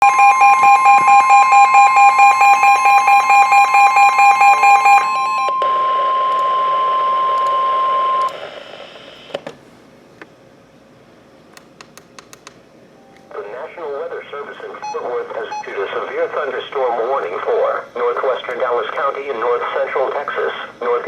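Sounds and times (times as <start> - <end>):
high-pitched alarm tone: 0.0 - 8.4
rapid electronic beeping: 14.8 - 15.8.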